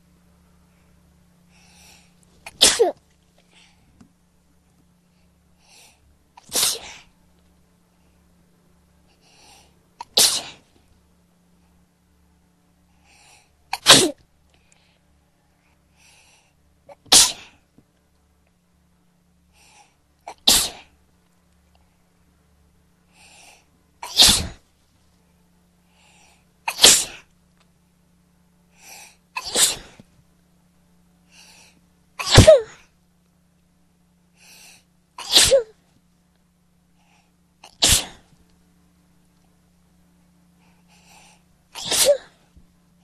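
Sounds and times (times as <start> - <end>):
faint in-breath: 0.6 - 2.2, 3.4 - 4.0, 5.0 - 6.1, 9.0 - 9.8, 12.8 - 13.6, 14.5 - 16.7, 19.4 - 20.1, 23.0 - 23.8, 25.8 - 26.6, 31.2 - 31.9, 34.3 - 35.0, 36.9 - 37.5, 40.5 - 41.6
person sneezing: 2.5 - 3.0, 6.4 - 7.0, 10.0 - 10.6, 13.7 - 14.2, 16.9 - 17.6, 20.3 - 20.9, 24.0 - 24.6, 26.7 - 27.3, 29.4 - 30.0, 32.2 - 32.8, 35.2 - 35.8, 37.6 - 38.3, 41.8 - 42.4.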